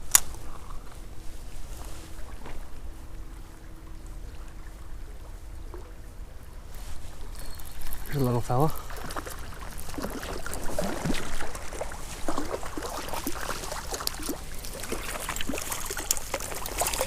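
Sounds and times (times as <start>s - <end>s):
water splashing and dripping: 7.0s - 17.0s.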